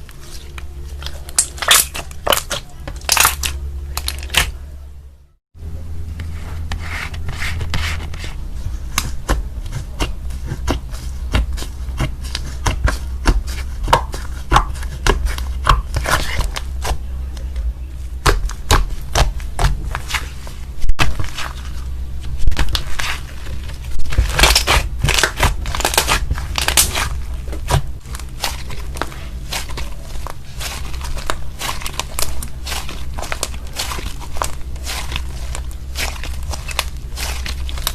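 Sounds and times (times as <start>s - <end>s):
steady low hum: 0.0s - 37.9s
slime clicking and popping: 1.0s - 4.5s.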